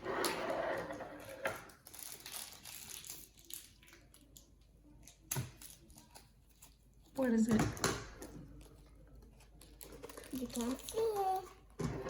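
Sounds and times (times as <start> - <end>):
packaging crinkling: 1.8 - 4.4.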